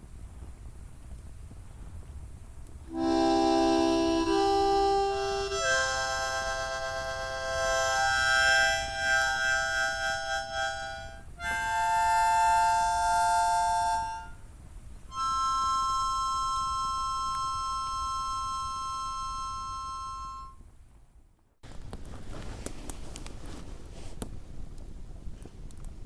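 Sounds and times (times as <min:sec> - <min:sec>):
harmonica playing long chords: 0:02.9 - 0:14.4, 0:15.1 - 0:20.6.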